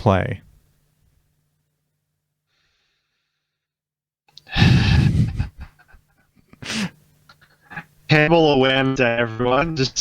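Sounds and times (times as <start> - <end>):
faint breathing: 2.4 - 3.8
person sighing loudly: 4.4 - 5.6.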